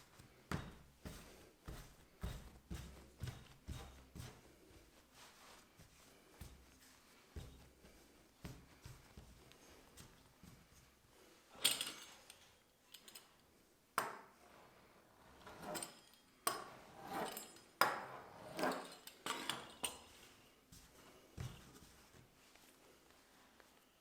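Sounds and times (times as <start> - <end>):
utensils clinking against dishes: 11.6 - 13.4, 15.4 - 20.4.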